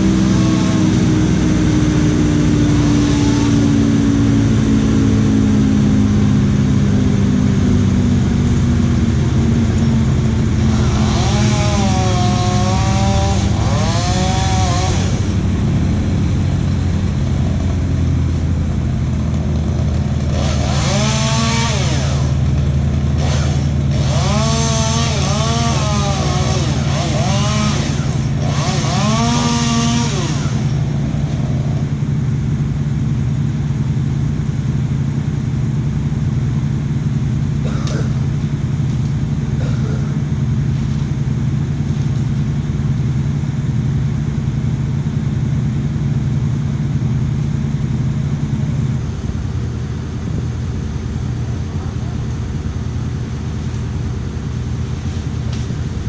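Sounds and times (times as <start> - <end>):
chainsaw revving: 0.0 - 5.9, 8.3 - 32.1, 37.4 - 42.7
low engine hum: 0.0 - 56.0.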